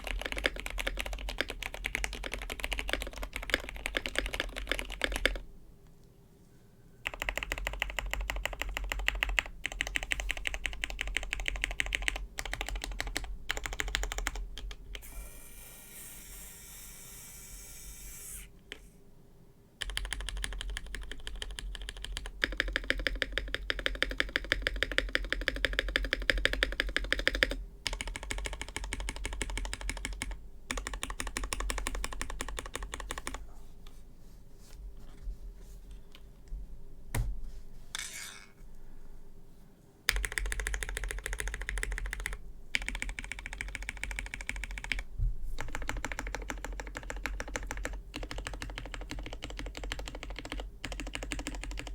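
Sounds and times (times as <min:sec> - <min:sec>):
mechanical keyboard typing: 0:00.0 - 0:05.4, 0:07.0 - 0:15.0, 0:19.8 - 0:33.4, 0:40.1 - 0:51.9.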